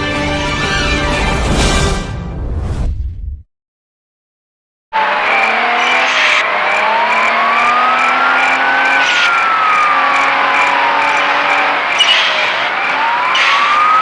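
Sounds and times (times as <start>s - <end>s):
wailing alarm siren: 5.0s - 14.0s.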